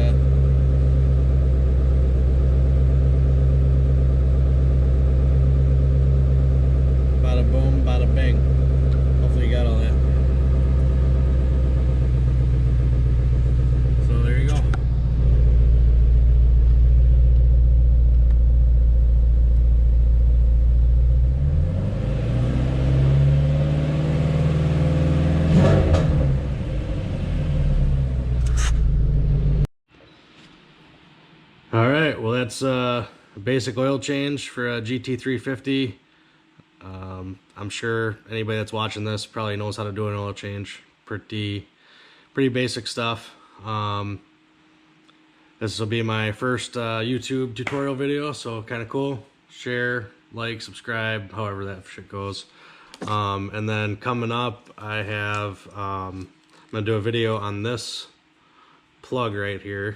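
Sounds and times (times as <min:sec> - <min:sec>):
car engine idling: 0:00.0 - 0:29.7.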